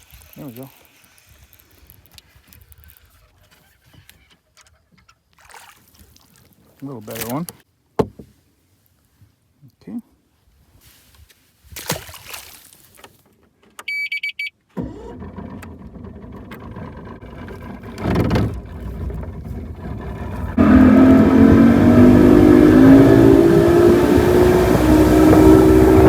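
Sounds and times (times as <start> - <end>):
outboard motor running: 14.8 - 26.0.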